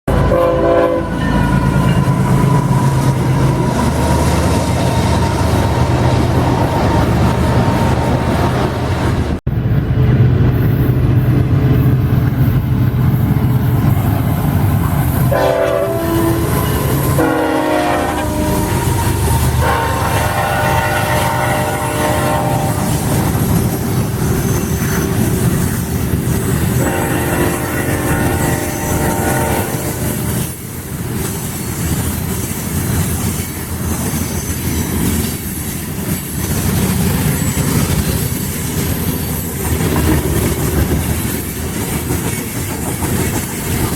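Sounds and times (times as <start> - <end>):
locomotive air horn blasts: 0.1 - 3.1, 15.3 - 23.5, 26.8 - 30.6
freight train rumbling past: 0.1 - 43.9.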